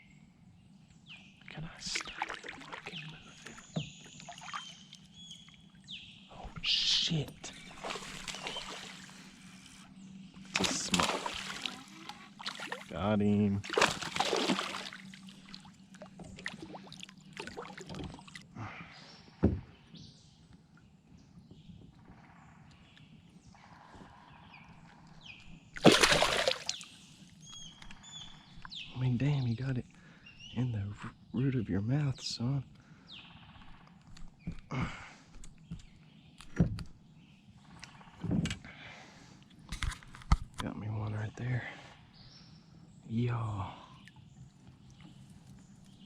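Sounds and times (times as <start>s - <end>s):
light water splashing: 1.5s - 5.6s, 7.3s - 18.5s, 25.8s - 28.0s
water lapping: 1.5s - 18.6s, 25.7s - 28.7s
bird chirps: 2.8s - 12.2s, 26.6s - 34.7s
thump against boat hull: 19.4s - 19.7s
knocks and clicks of gear: 35.3s - 37.0s.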